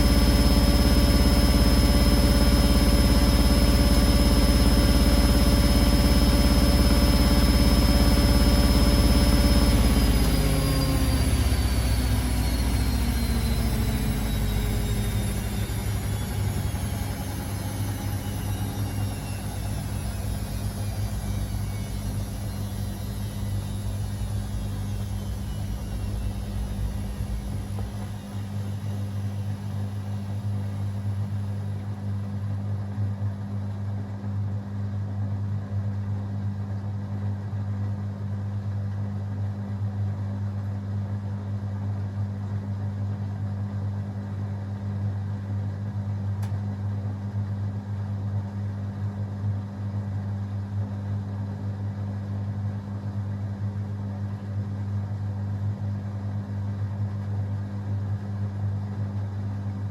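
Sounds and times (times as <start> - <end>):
steady low hum: 0.0 - 33.8
washing machine spinning down: 0.0 - 59.9.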